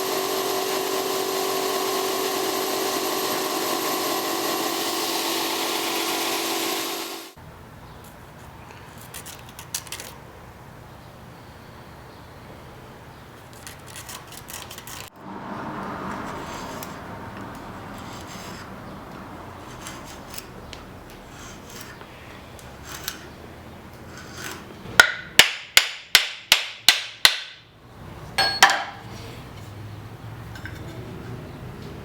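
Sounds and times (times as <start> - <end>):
hammer ringing on steel: 28.4 - 29.0.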